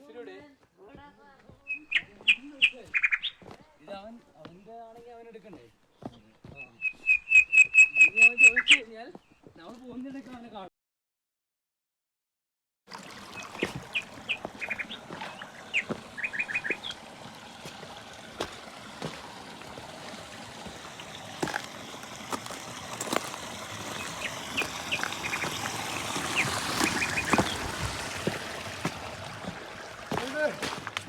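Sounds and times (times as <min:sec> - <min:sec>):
birds chirping: 0:01.6 - 0:09.7, 0:13.2 - 0:31.0
flowing water: 0:12.9 - 0:31.0.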